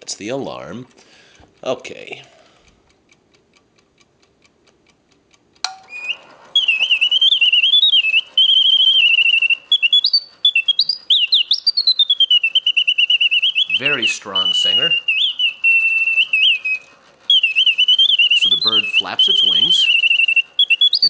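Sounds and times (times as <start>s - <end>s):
clockwork ticking: 0.0s - 21.0s
mechanical bird whistle warbling: 5.8s - 21.0s.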